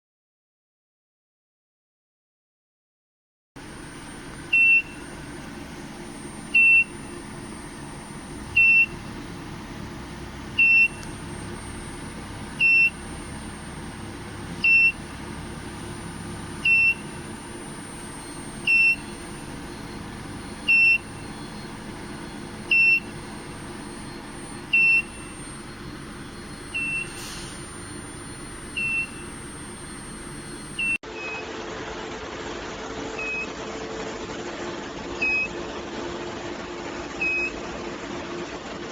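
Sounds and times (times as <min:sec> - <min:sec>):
electronic warning beeps: 0:03.6 - 0:31.5
steady industrial hum: 0:03.6 - 0:38.9.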